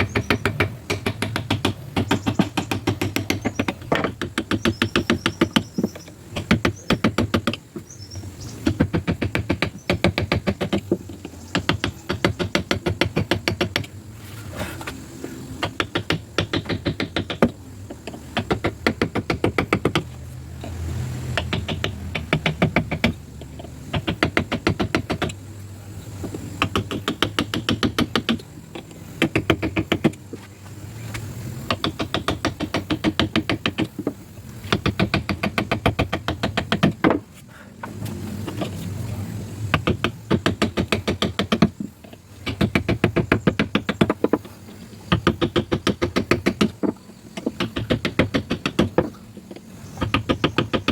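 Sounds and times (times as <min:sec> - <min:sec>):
chisel struck into wood: 0:00.0 - 0:07.6, 0:15.6 - 0:20.1, 0:21.4 - 0:23.2, 0:23.9 - 0:25.3, 0:31.7 - 0:37.2, 0:39.7 - 0:41.8, 0:42.4 - 0:44.4, 0:45.1 - 0:49.2.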